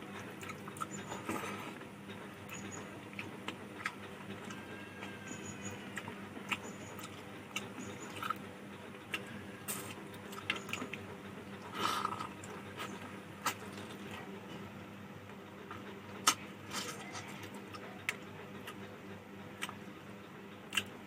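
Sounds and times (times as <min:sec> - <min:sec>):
faint steady hum: 0:00.0 - 0:21.0
person chewing food: 0:05.9 - 0:08.4, 0:09.0 - 0:14.2.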